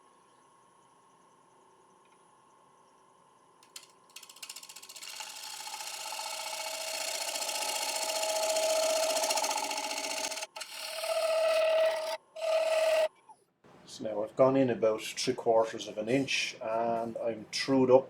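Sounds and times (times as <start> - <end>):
gouge cutting wood on lathe: 4.2 - 13.1.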